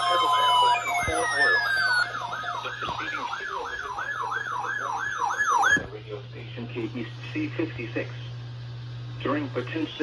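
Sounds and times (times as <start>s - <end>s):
electronic siren yelping: 0.0s - 5.8s
steady low hum: 0.0s - 10.0s.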